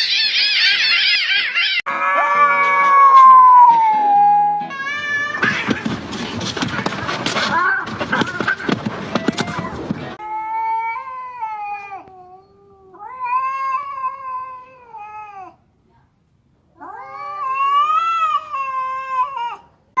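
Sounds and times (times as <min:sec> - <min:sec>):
cats yowling: 0:00.0 - 0:08.7, 0:10.2 - 0:15.6, 0:16.8 - 0:19.7.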